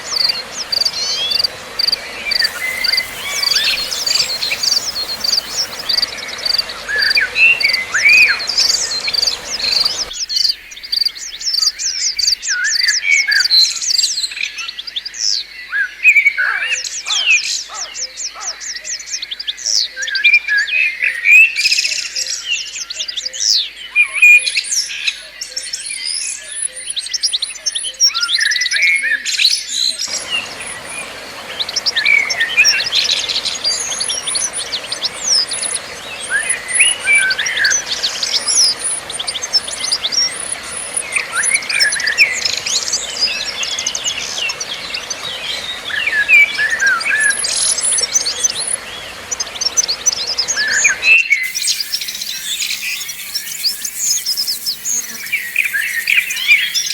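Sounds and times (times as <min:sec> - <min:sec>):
birds chirping and trilling: 0:00.6 - 0:12.4, 0:51.4 - 0:56.9.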